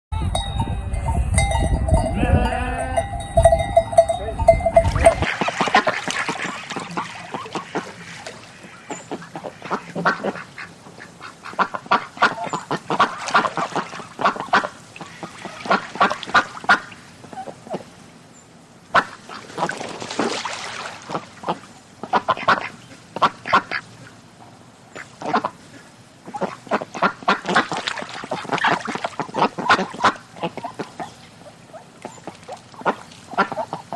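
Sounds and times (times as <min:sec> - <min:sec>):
low rumble: 0:00.1 - 0:05.2.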